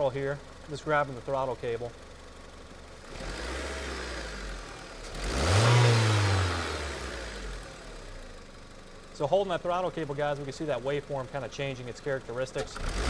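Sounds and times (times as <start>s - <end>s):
car engine revving: 3.0s - 8.5s, 12.6s - 13.0s.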